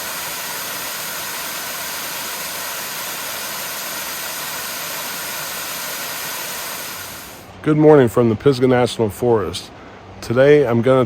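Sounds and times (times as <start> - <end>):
creek water flowing: 0.0 - 7.4.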